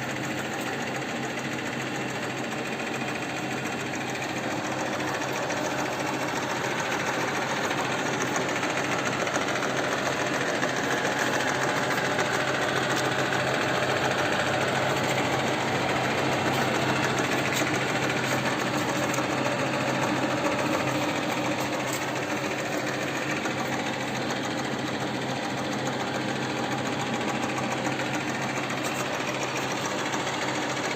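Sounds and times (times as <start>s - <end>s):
lathe mechanical whirr: 0.0s - 30.9s.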